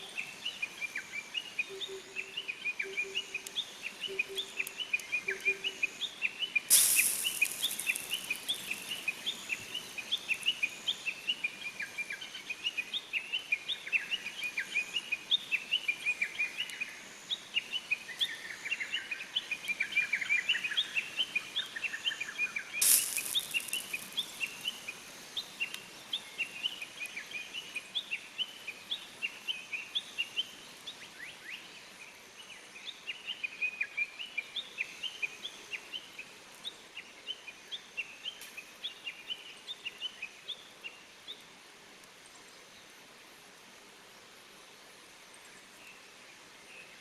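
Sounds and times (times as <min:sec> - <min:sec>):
songbirds chirping: 0:00.0 - 0:47.0
sharp snap: 0:06.7 - 0:08.9.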